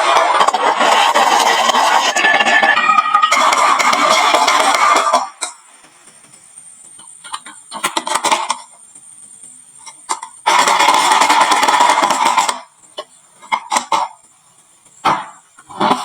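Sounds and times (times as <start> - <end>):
marbles clattering on wooden run: 0.0 - 5.4.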